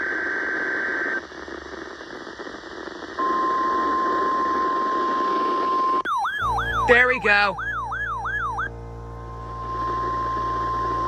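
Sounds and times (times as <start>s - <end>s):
warbling data burst: 6.1s - 8.8s
steady warning alarm tone: 6.1s - 11.0s
radio static: 6.4s - 8.8s.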